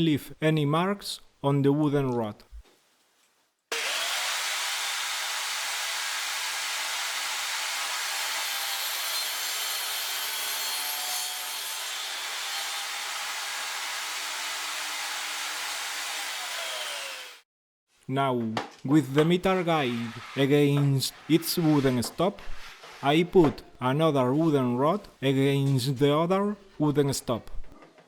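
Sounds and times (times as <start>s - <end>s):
table saw cutting wooden rod: 3.7s - 17.4s, 19.7s - 22.9s.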